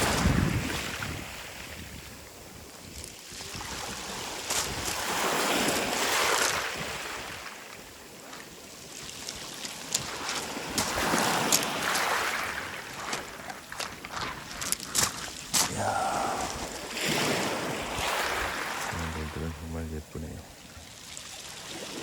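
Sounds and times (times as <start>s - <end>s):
waves washing up a beach: 0.0s - 22.0s
pebbles rattling in surf: 8.4s - 15.8s.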